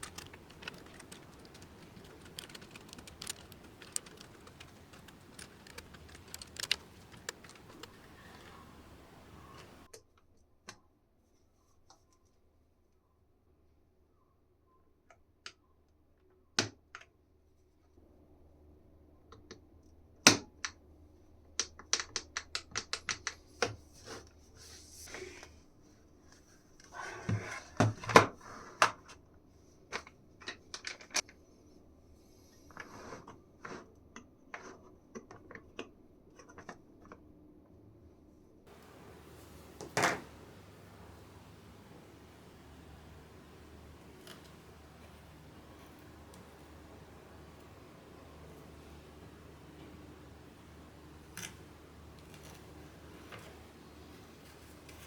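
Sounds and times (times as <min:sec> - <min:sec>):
keyboard parts clicking: 0:00.0 - 0:09.9, 0:38.7 - 0:55.0
scraping rustles: 0:00.0 - 0:09.9.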